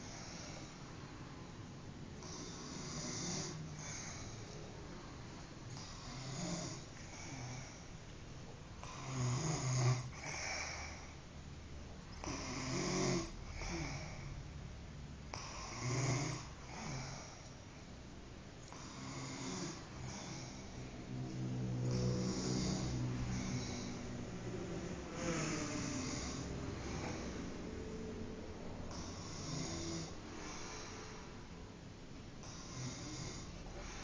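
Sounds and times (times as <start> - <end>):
person snoring: 2.2 - 5.1, 5.7 - 7.8, 8.8 - 11.2, 12.1 - 14.4, 15.3 - 17.5, 18.7 - 31.4, 32.4 - 34.0.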